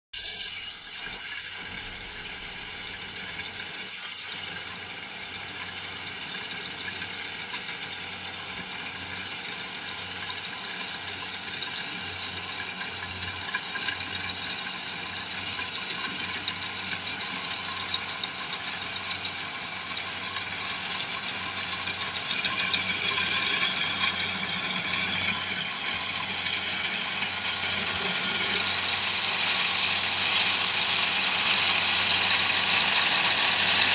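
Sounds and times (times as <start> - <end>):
combine harvester drone with rattling: 11.1 - 33.9.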